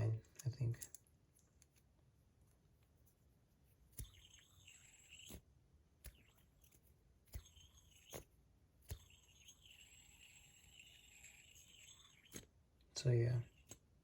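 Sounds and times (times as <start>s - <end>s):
light clicks of metal spinner: 0.0s - 1.7s.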